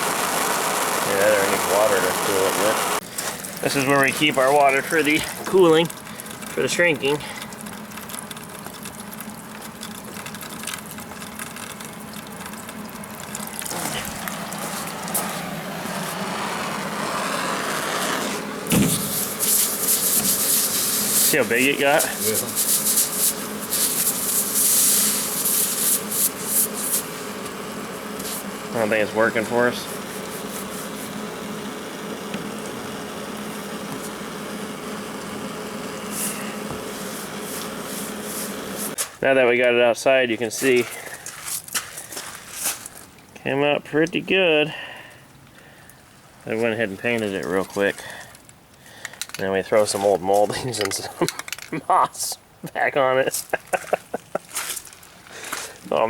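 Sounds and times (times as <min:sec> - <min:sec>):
water pouring: 0:00.0 - 0:17.2, 0:18.7 - 0:38.7
steady low hum: 0:00.0 - 0:41.4
loud scraping: 0:13.7 - 0:31.2
short hiss: 0:14.6 - 0:27.6, 0:33.5 - 0:39.2.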